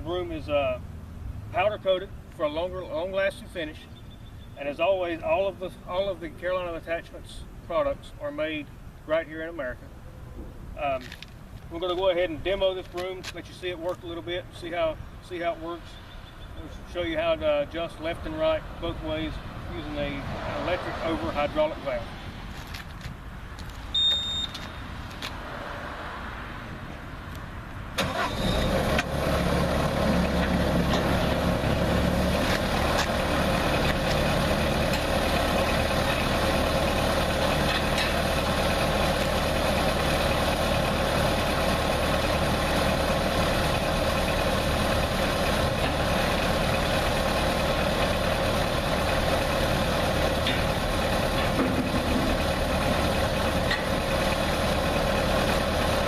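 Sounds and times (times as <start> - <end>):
skid steer engine running: 28.0 - 56.0.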